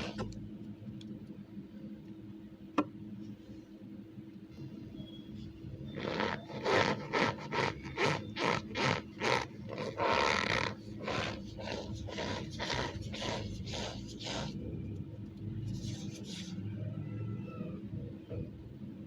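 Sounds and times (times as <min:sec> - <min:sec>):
chalk squeaking: 0:05.4 - 0:14.6, 0:15.7 - 0:16.6.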